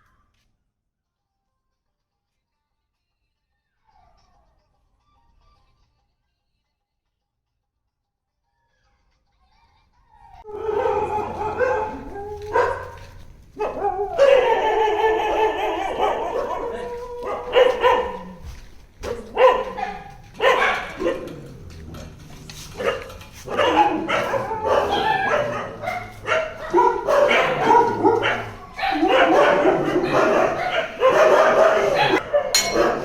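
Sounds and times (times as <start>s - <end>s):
dog barking yipping and whining: 10.4s - 18.4s, 19.0s - 21.4s, 22.5s - 33.0s.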